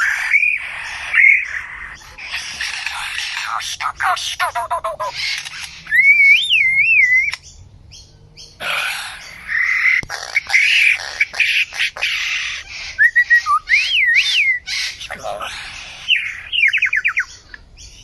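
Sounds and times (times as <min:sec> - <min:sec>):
bird harsh scratchy squawks: 0:00.0 - 0:06.1, 0:08.6 - 0:13.0, 0:14.2 - 0:17.2
bird wavering whistle: 0:05.8 - 0:07.4, 0:12.9 - 0:14.8.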